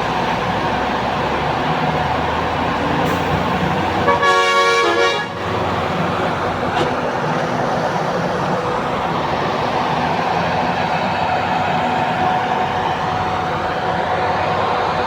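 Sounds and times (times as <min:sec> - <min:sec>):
road traffic noise: 0:00.0 - 0:15.0
vehicle horn toot: 0:04.0 - 0:05.6.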